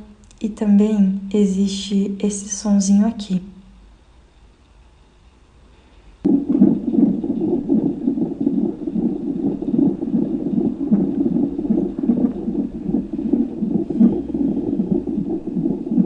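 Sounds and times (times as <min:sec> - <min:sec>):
fetal heartbeat on doppler monitor: 0:06.2 - 0:16.0.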